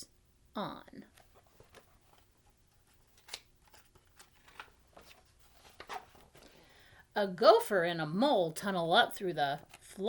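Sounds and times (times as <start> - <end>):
book pages turning: 1.1 - 6.6
paper rustling: 1.1 - 6.6.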